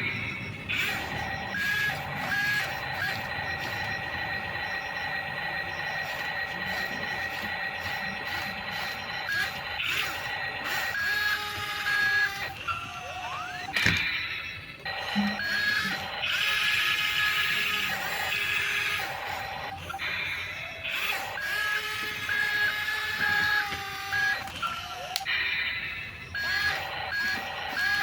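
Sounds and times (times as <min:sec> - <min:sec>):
short electronic beeps: 0:00.0 - 0:10.1, 0:13.6 - 0:16.0
toy electric motors whining: 0:00.0 - 0:28.0.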